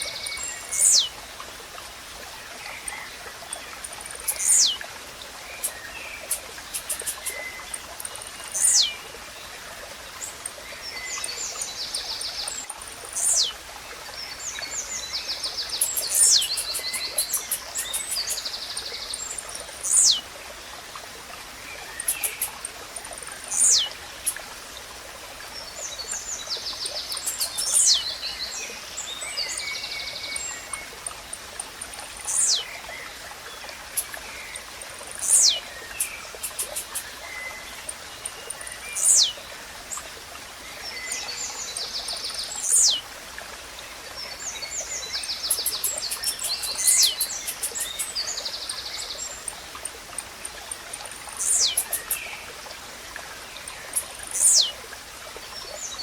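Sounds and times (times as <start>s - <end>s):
bird's short high song: 0.0s - 1.1s, 4.3s - 4.8s, 8.6s - 9.0s, 13.2s - 13.5s, 45.4s - 48.2s
other birds chirping: 0.0s - 1.2s, 3.7s - 4.8s, 5.5s - 9.0s, 11.2s - 13.6s, 15.5s - 20.2s, 21.9s - 24.5s, 26.8s - 28.0s, 30.6s - 32.7s, 33.8s - 39.4s, 42.6s - 43.0s, 45.2s - 48.8s, 49.4s - 52.4s, 53.7s - 54.8s
stream rushing: 0.0s - 56.0s.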